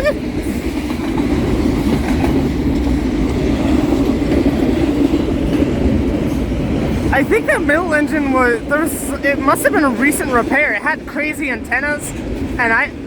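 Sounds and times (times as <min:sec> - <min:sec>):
freight train wheels on rail: 0:00.0 - 0:13.0.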